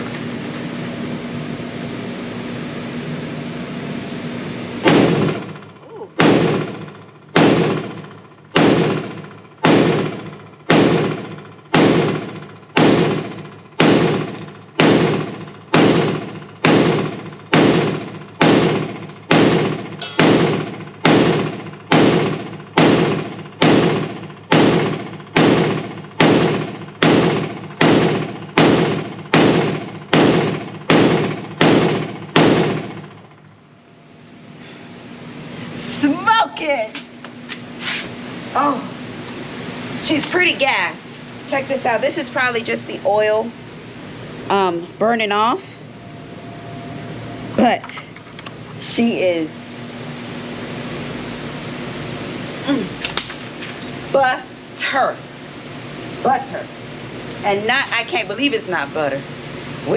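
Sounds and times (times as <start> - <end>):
rifle shots with ringing decay: 6.2 - 6.8, 7.4 - 8.0, 8.6 - 33.0.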